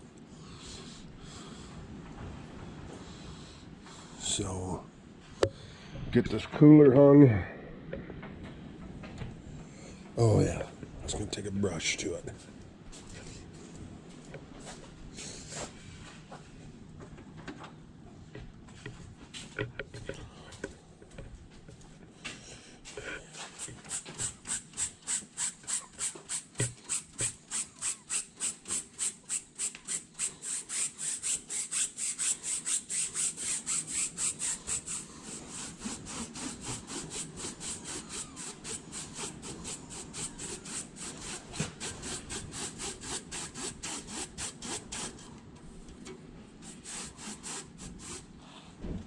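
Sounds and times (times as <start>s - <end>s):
brush scrubbing metal part: 23.3s - 45.3s, 46.6s - 48.3s.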